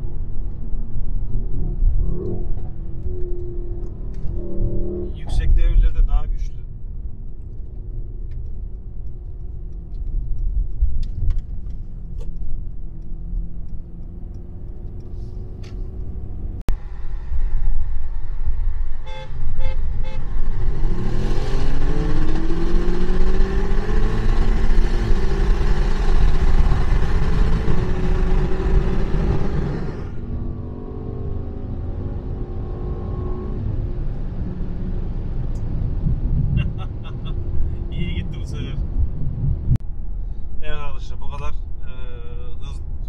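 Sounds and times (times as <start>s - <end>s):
car engine accelerating hard: 20.3s - 38.2s.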